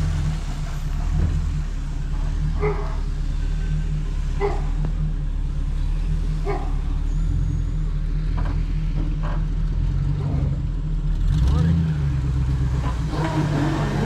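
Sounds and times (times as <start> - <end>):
vehicle engine idling: 0.0 - 14.0
dog barking: 2.5 - 3.1, 4.4 - 4.8, 6.4 - 6.9.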